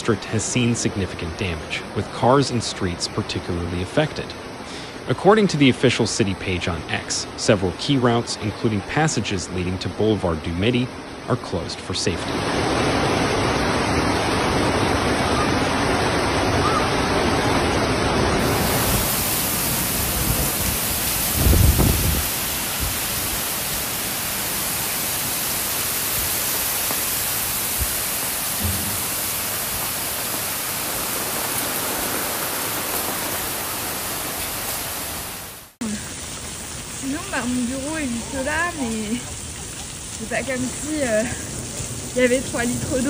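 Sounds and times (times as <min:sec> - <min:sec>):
floodwater rushing: 0:00.0 - 0:43.0
low thump: 0:28.6 - 0:29.9.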